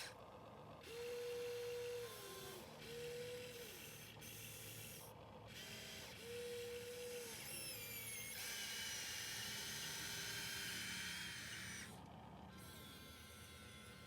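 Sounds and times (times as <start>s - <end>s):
electric motors whining: 5.6s - 14.0s.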